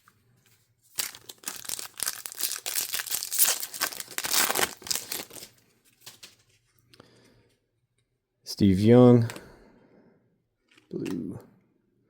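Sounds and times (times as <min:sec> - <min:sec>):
plastic wrapper crinkling and tearing: 0:00.9 - 0:06.4.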